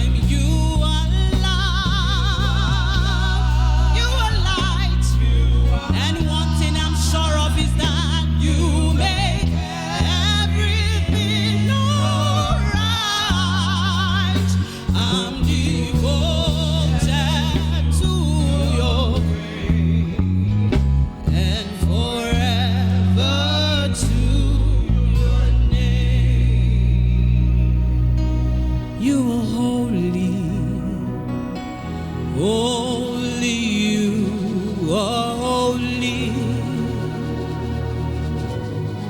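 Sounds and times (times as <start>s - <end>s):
sustained low instrumental chords: 0.0s - 39.0s.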